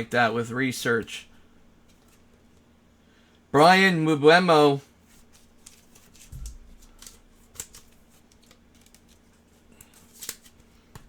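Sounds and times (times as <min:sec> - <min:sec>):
cards clicking and sliding: 0:05.1 - 0:11.0.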